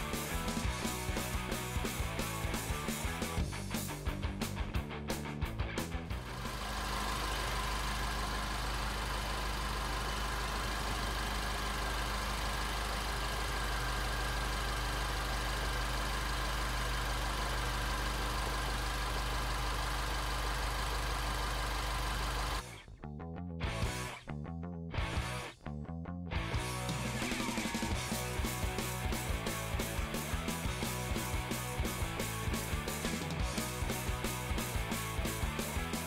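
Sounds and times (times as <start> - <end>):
car engine idling: 6.0 - 22.9, 26.6 - 36.0.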